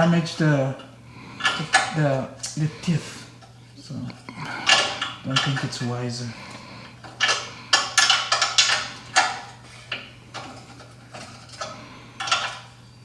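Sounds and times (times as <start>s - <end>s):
metal hand tools clanking: 4.2s - 5.9s.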